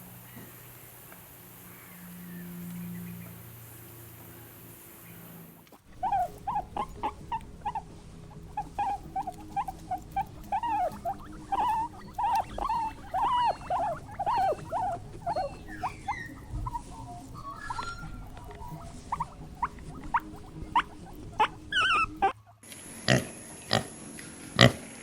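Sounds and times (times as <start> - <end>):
small animal squeaking: 5.0 - 22.5.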